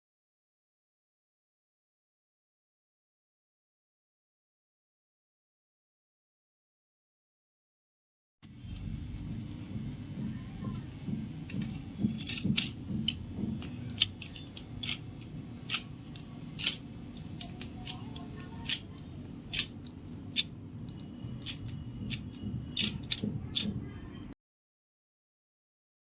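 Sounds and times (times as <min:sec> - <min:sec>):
steady low hum: 0:08.5 - 0:24.4
scissors snipping: 0:11.5 - 0:13.2, 0:13.9 - 0:23.8.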